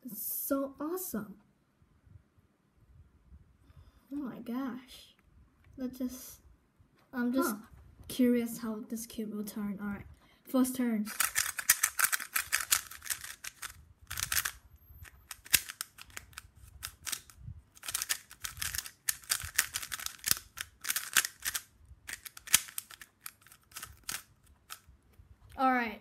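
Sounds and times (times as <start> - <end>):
puzzle cube clicking: 11.1 - 24.9.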